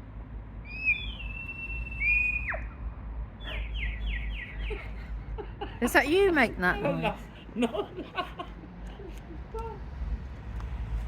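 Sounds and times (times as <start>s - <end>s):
bird whistling call: 0.7s - 2.8s, 3.4s - 4.8s.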